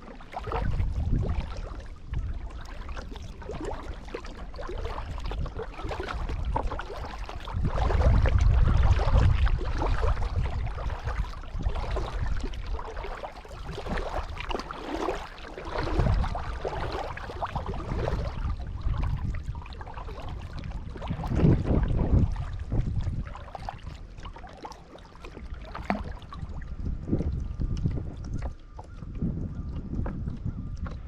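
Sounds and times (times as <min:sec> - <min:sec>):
kayak paddle splashing water: 0:00.0 - 0:31.0
low rumble: 0:20.4 - 0:24.0.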